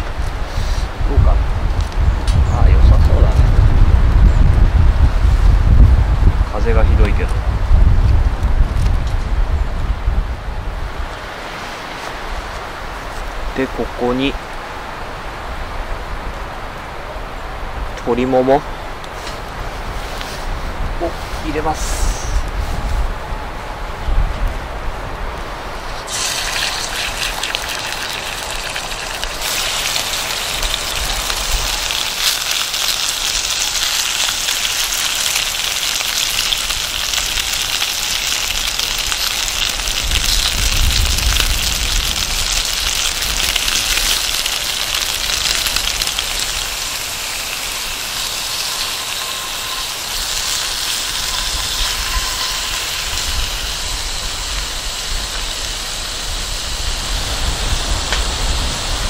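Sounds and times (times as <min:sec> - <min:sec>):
wind rumbling on microphone: 0:00.0 - 0:59.0
chicken sizzling in oil: 0:26.1 - 0:58.5.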